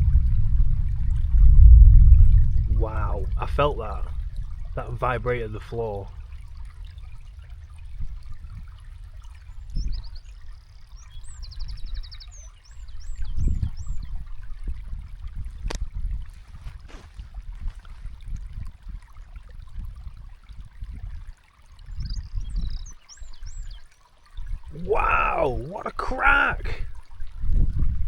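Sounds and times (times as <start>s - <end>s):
thunder rumbling: 0.0s - 9.1s
small birds chirping: 6.0s - 14.3s, 21.9s - 26.6s.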